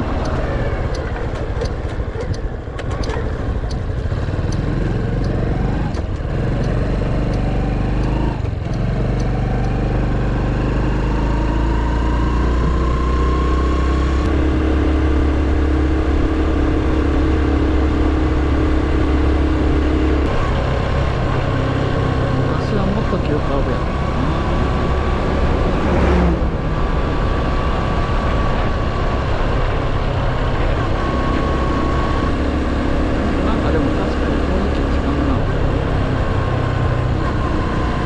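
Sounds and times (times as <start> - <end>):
motorcycle engine accelerating: 0.0 - 38.0
light ticks: 0.2 - 9.8.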